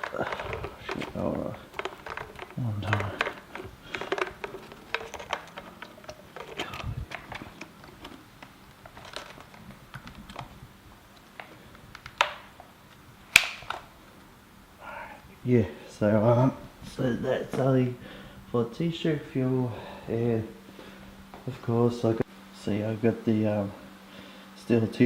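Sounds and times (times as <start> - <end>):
handling clicks and taps: 0.0 - 10.6.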